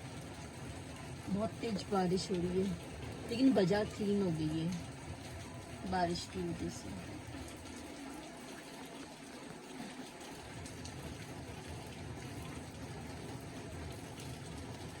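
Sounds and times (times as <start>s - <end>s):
heavy rain falling: 0.2s - 8.4s.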